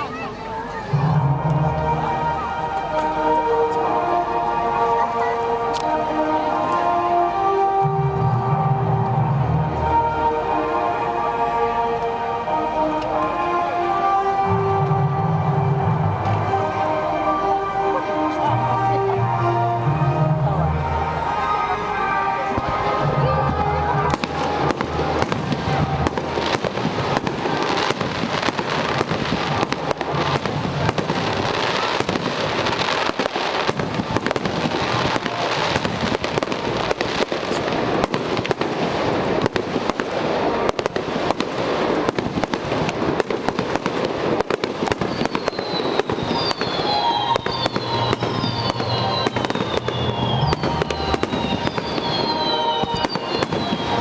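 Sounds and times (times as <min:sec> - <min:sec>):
fireworks bangs and crackles: 0:00.0 - 0:54.0
fireworks whistles falling in pitch: 0:44.4 - 0:54.0.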